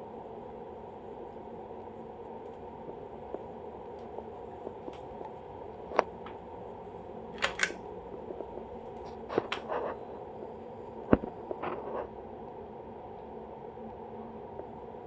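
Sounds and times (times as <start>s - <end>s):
ceiling fan humming: 0.0s - 15.0s
sharp clicks and knocks: 7.4s - 7.8s.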